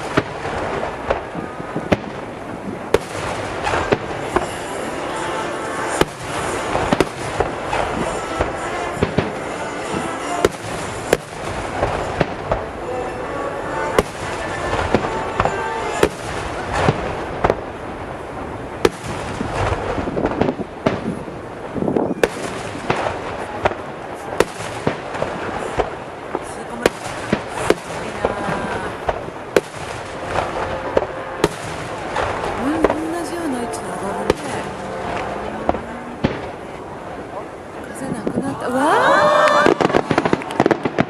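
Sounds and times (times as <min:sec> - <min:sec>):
rumble of fireworks: 0:00.0 - 0:41.0
firework shells bursting: 0:18.8 - 0:36.6.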